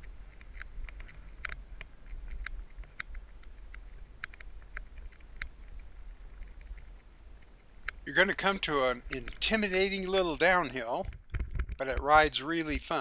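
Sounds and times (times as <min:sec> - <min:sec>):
sharp clicks and ticks: 0:00.0 - 0:13.0
steady low rumble: 0:00.0 - 0:13.0.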